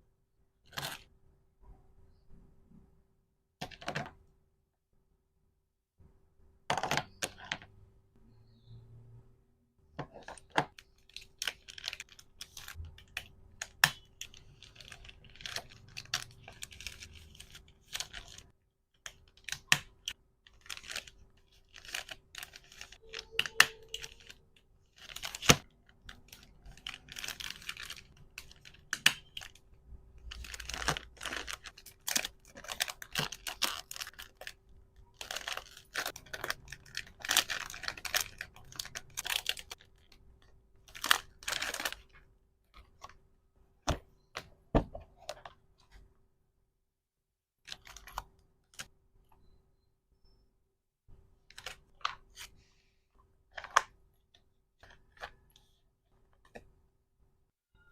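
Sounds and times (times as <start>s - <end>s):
packaging crinkling and tearing: 10.4s - 40.2s, 40.9s - 42.1s.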